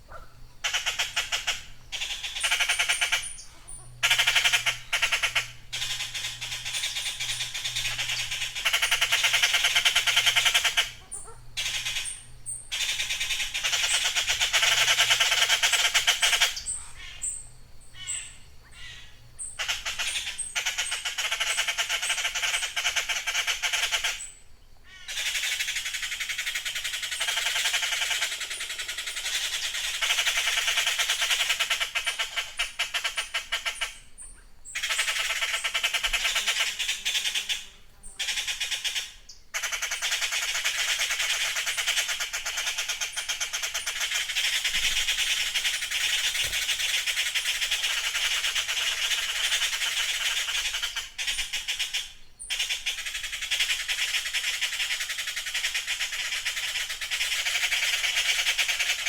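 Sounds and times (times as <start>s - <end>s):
blue jays harsh raspy calls: 0.0s - 59.0s.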